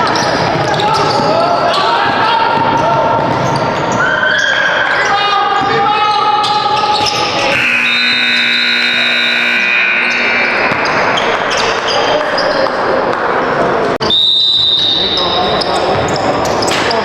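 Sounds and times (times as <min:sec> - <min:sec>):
sneaker squeaks: 0:00.0 - 0:01.9, 0:02.6 - 0:05.8, 0:06.4 - 0:08.4, 0:10.0 - 0:12.8, 0:14.5 - 0:17.0
basketball bouncing on court: 0:10.5 - 0:12.5.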